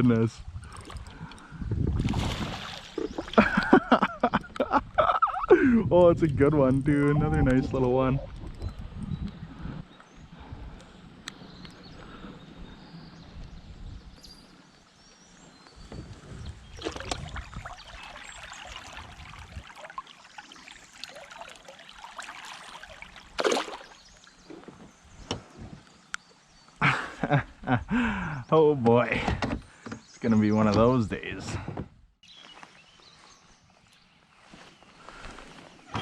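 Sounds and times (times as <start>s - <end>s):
water splashing and sloshing: 0.6s - 4.6s, 16.5s - 25.6s.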